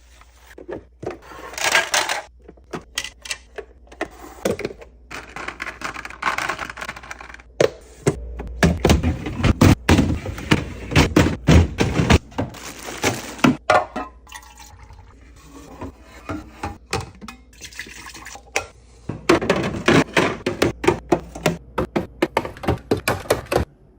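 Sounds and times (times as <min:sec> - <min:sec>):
liquid pouring into container: 0:14.3 - 0:15.2, 0:17.6 - 0:18.5.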